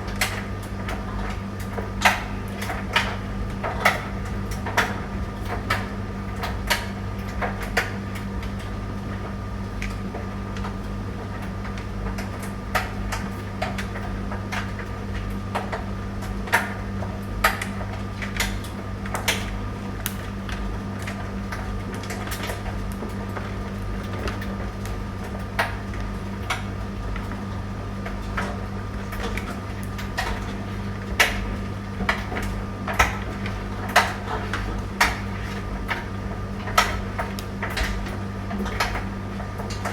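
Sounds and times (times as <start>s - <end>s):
tumble dryer humming: 0.0s - 39.9s.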